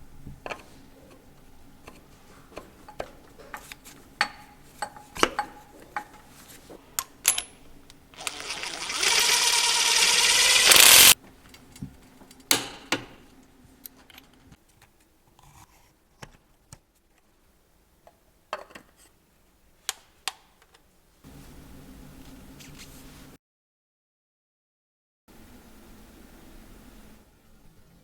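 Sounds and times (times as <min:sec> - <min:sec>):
loud mechanical noise: 0:08.2 - 0:11.2.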